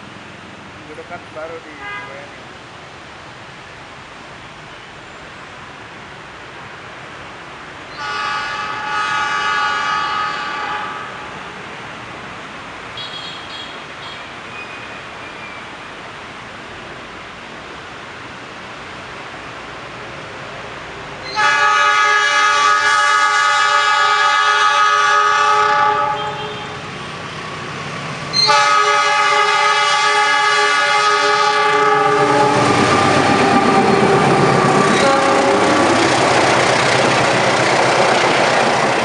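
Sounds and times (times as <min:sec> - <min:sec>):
train running noise: 0:00.0 - 0:39.0
train horn blasts: 0:08.0 - 0:11.4, 0:21.3 - 0:26.8, 0:28.4 - 0:34.2, 0:34.9 - 0:35.7.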